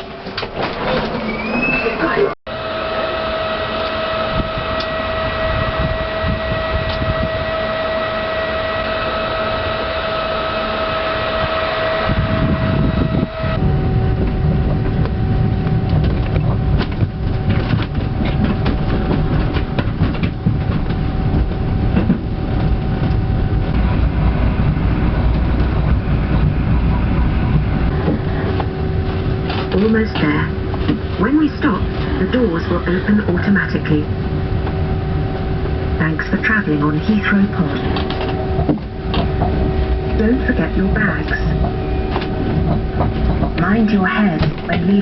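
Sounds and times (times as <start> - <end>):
electric motor whine: 2.5 - 15.9
low running rumble: 2.5 - 45.0.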